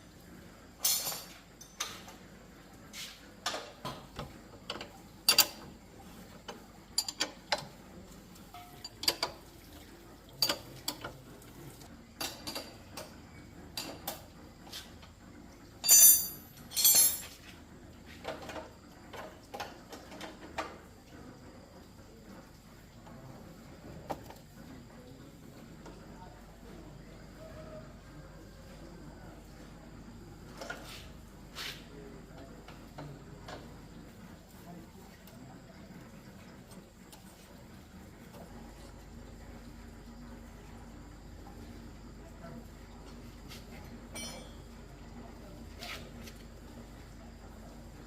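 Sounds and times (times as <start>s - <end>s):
metal parts clattering: 15.8s - 17.3s
metal tools clinking: 15.8s - 17.3s, 44.1s - 44.6s.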